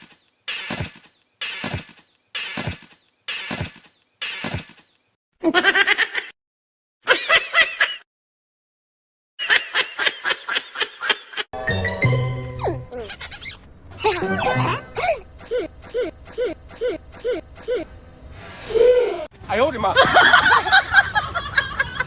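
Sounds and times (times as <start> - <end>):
squeaky sped-up voice sounds: 12.6 - 19.3
laugh-like yelps: 13.0 - 18.0.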